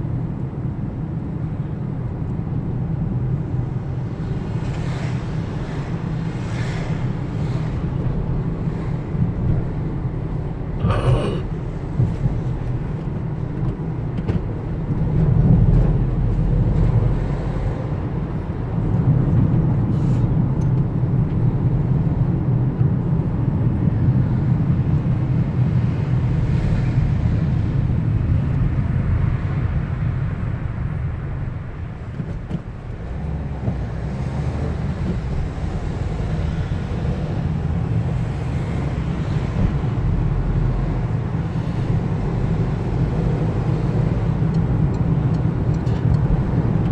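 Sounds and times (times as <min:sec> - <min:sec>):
vehicle rumble on the move: 0:00.0 - 0:46.9.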